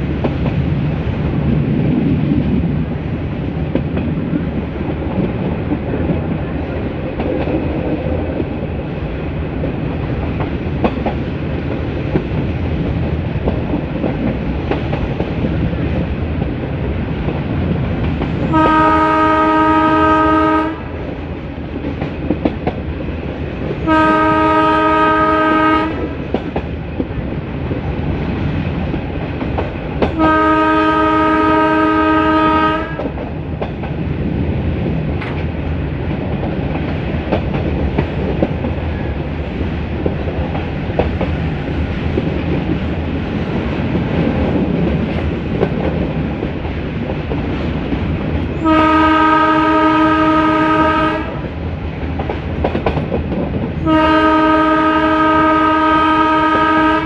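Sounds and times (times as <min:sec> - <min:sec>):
train rumble: 0:00.0 - 0:57.0
locomotive air horn blasts: 0:18.5 - 0:20.8, 0:23.8 - 0:26.1, 0:30.2 - 0:33.1, 0:48.6 - 0:51.4, 0:53.8 - 0:57.0
wheels clacking over rail joints: 0:32.8 - 0:49.0, 0:50.6 - 0:54.0.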